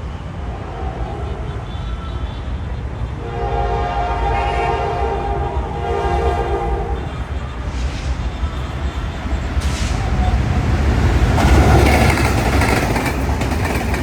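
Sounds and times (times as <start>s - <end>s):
low train rumble: 0.0s - 14.0s
train horn blast: 0.4s - 10.3s.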